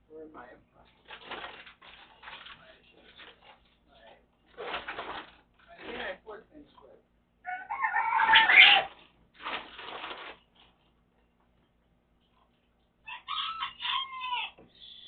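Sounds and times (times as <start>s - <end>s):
rooster crowing: 7.4s - 8.9s, 13.0s - 15.0s.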